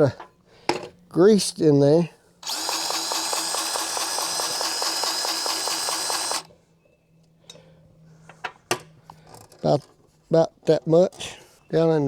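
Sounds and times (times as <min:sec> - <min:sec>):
powered grease gun pump pulsing: 0:02.4 - 0:06.5.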